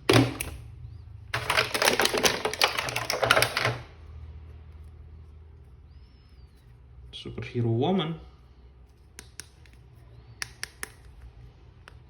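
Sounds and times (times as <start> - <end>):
plastic packaging crinkling: 1.3 - 3.8.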